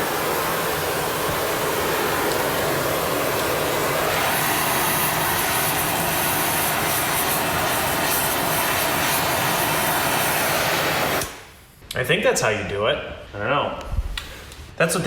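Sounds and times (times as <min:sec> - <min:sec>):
gas torch hissing: 0:00.0 - 0:11.8.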